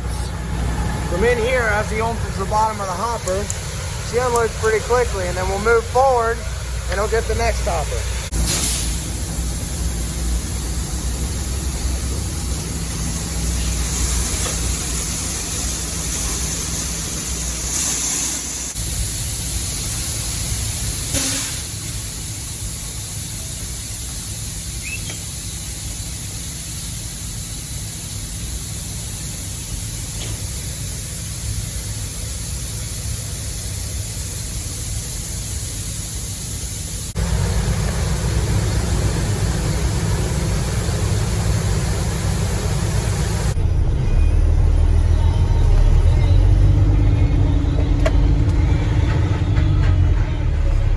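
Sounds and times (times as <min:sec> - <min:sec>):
truck engine idling: 0:00.0 - 0:50.9
grain pouring rushing hiss: 0:00.8 - 0:43.6.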